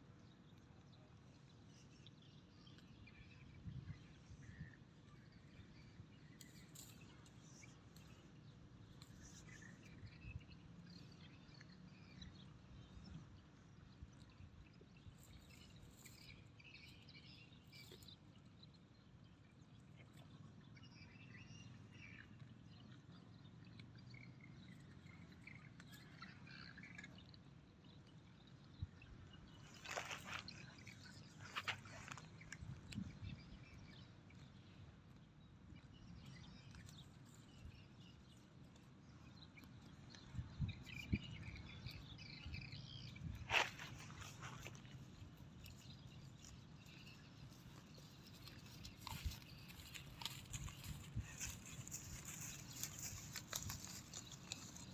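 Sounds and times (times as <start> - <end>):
small birds or insects chirping: 0.0 - 54.9
cattle grazing: 6.4 - 8.2, 29.7 - 32.5, 41.5 - 54.9.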